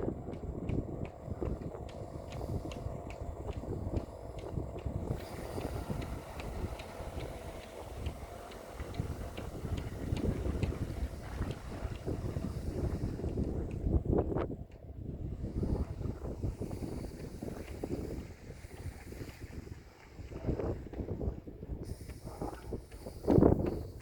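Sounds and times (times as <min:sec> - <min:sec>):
faint regular ticking: 0:00.0 - 0:14.0, 0:21.8 - 0:24.0
wind buffeting the microphone: 0:00.0 - 0:24.0.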